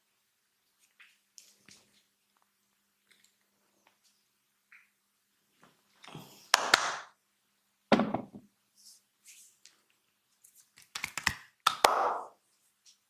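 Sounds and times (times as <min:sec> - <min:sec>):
massage slaps: 0:06.6 - 0:07.2, 0:10.8 - 0:12.4.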